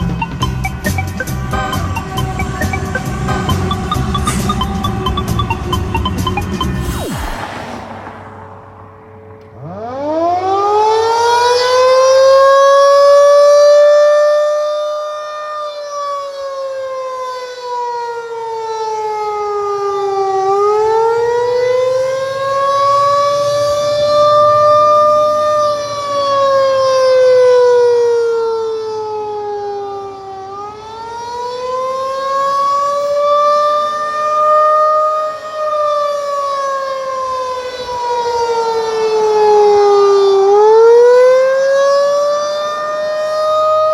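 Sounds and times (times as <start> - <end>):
tornado siren wailing: 0.0 - 43.9.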